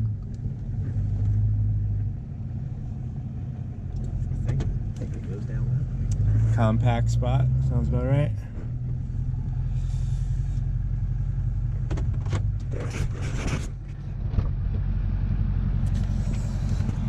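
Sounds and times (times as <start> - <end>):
car cabin hum: 15.7 - 17.0.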